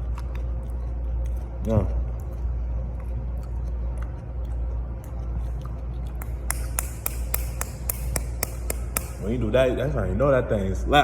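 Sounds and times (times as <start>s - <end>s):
crunchy food chewing: 0.0s - 6.5s.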